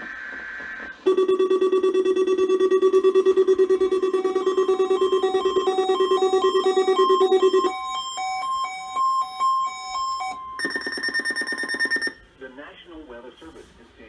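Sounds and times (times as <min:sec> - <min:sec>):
fast-pulsing electronic buzz: 0:01.1 - 0:07.9
short stepped beeps: 0:01.1 - 0:12.1
alternating alarm beeps: 0:01.1 - 0:12.2
steady high alarm tone: 0:01.1 - 0:12.2.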